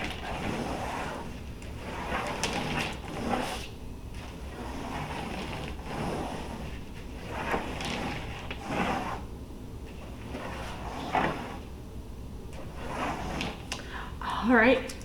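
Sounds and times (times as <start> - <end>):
toy car wheels scraping paper: 0.0 - 9.3, 10.2 - 11.6, 12.6 - 13.7.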